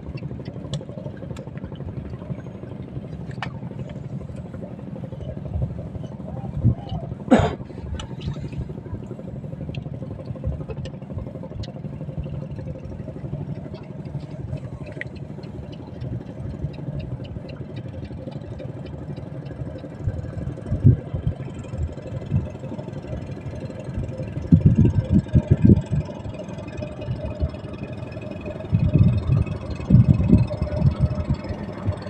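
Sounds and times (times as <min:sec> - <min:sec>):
small engine idling: 0:00.0 - 0:32.0.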